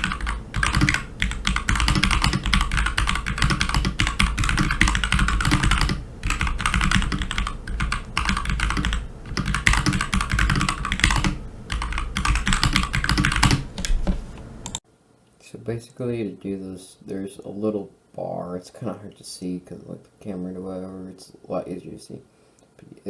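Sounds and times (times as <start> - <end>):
mechanical keyboard typing: 0.0 - 14.8.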